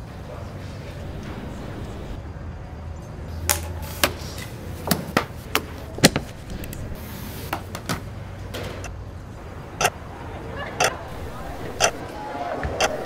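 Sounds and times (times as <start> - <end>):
low hum: 0.8 - 2.4, 10.8 - 12.1.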